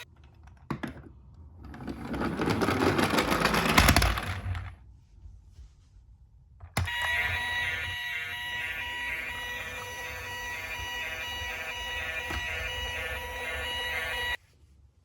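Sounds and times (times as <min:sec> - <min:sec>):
toy electronic siren: 0:06.8 - 0:14.4.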